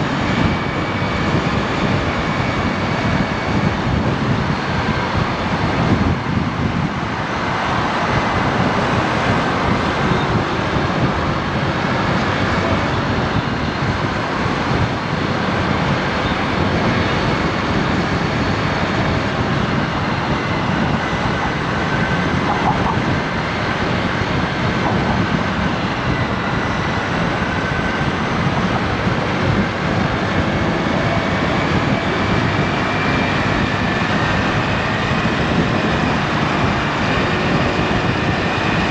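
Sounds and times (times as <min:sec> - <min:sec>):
scooter engine running: 0:00.0 - 0:38.9
wind and road noise: 0:00.0 - 0:38.9.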